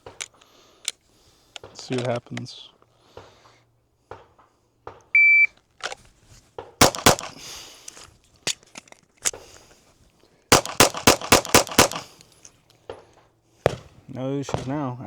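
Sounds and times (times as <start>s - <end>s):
shot timer beep: 5.2s - 5.5s
pistol shots: 6.8s - 7.5s, 10.5s - 12.2s.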